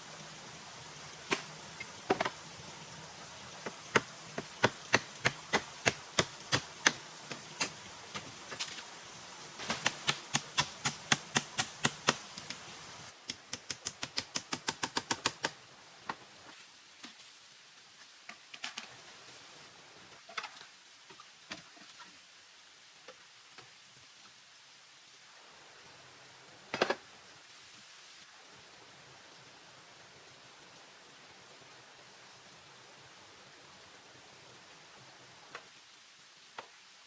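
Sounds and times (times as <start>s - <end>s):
sharp chopping or hammering strikes: 3.6s - 8.3s, 9.6s - 12.6s.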